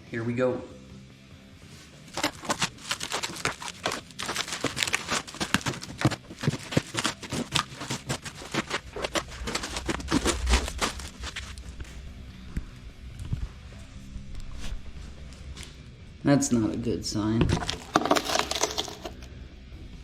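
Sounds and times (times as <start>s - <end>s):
cardboard box tearing and crackling: 2.1s - 11.6s, 17.5s - 19.2s.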